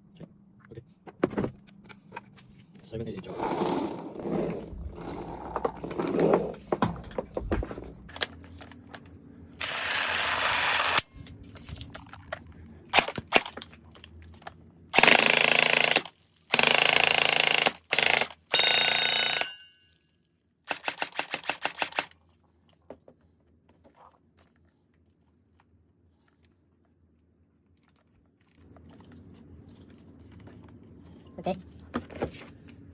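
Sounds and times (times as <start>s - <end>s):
gel blaster firing full-auto: 15.0s - 19.6s, 20.7s - 22.1s.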